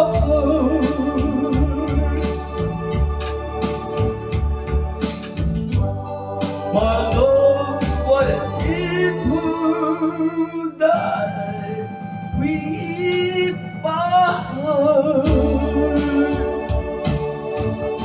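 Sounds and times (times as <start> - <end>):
guitar and organ chords: 0.0 - 18.0
person singing long notes: 6.6 - 18.0.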